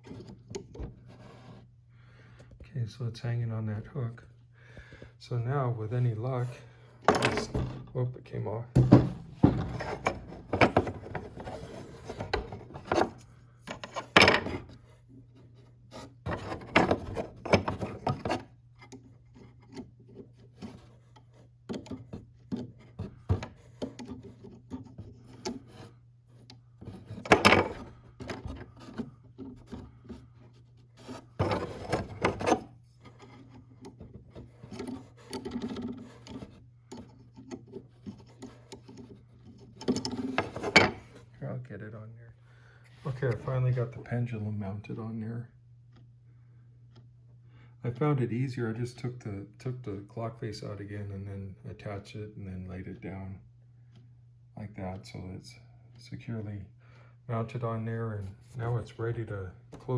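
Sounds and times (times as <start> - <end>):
scraping and rubbing in clock case: 0.0 - 1.8, 8.8 - 41.4
knocks on wooden clock case: 8.8 - 10.9.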